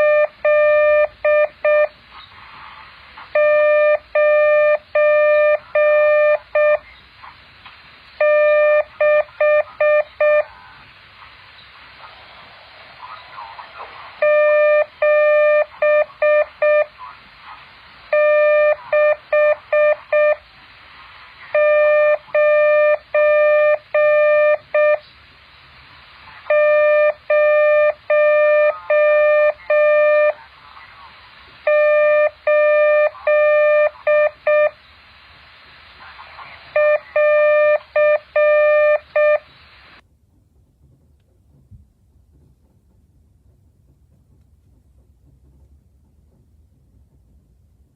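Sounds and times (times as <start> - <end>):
morse code beeps: 0.0 - 2.0, 3.4 - 6.8, 8.2 - 10.5, 14.2 - 17.0, 18.1 - 20.4, 21.5 - 25.0, 26.5 - 30.4, 31.7 - 34.8, 36.7 - 39.5.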